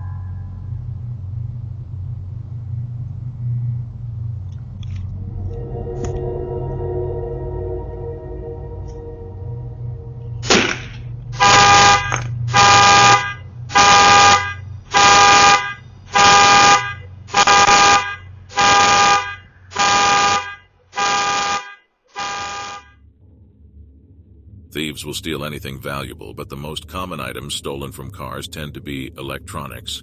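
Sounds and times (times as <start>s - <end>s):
truck alarm honking: 5.6s - 22.9s.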